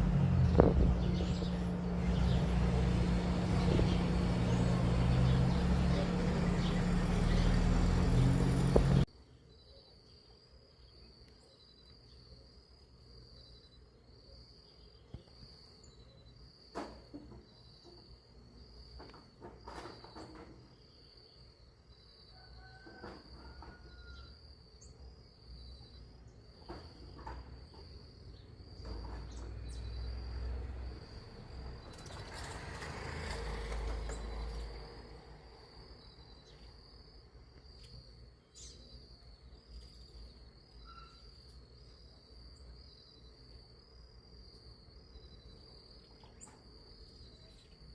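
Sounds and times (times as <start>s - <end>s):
rushing noise with low rumble: 0.0s - 9.1s
insect chorus: 0.0s - 47.9s
bird chirps: 0.4s - 8.6s, 37.7s - 43.4s.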